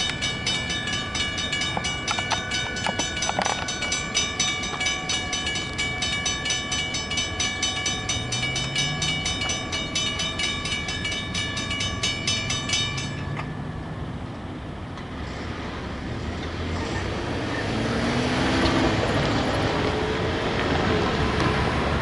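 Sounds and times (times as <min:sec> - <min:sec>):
crossing bell ringing rapidly: 0:00.0 - 0:14.1.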